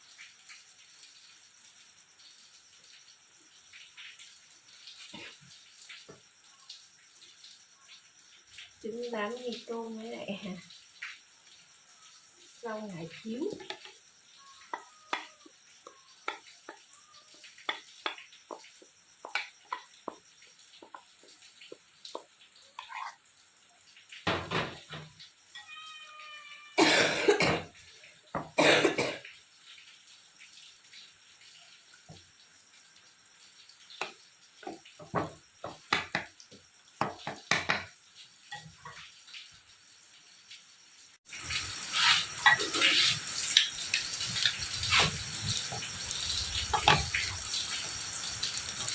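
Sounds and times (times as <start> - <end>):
cooking utensils clicking and knocking: 13.4 - 23.2, 34.0 - 36.4, 37.0 - 39.0, 41.6 - 48.9.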